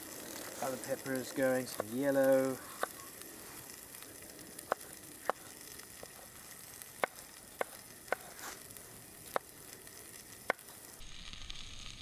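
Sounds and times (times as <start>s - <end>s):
meat and onions sizzling in a pan: 0.0s - 12.0s.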